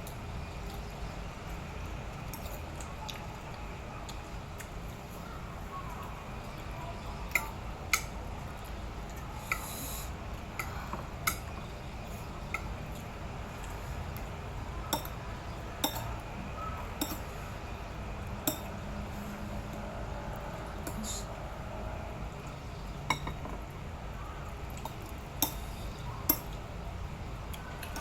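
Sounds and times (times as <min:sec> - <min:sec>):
cutlery clinking against a plate: 0:14.9 - 0:15.2, 0:15.8 - 0:16.2, 0:17.0 - 0:17.3, 0:18.4 - 0:18.8, 0:23.1 - 0:23.7, 0:24.8 - 0:26.6.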